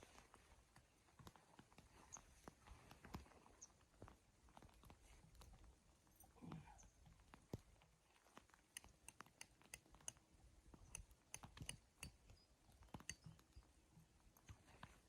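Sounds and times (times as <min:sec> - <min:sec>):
irregular sharp clicks: 0:08.6 - 0:10.2, 0:10.8 - 0:13.7.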